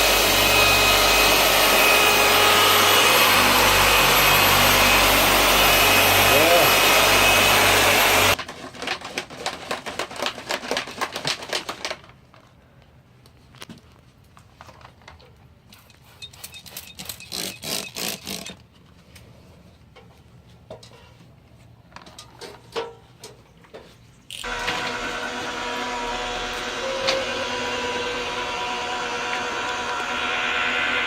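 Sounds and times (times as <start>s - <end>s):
power tool running: 0.0s - 8.4s, 24.4s - 31.0s.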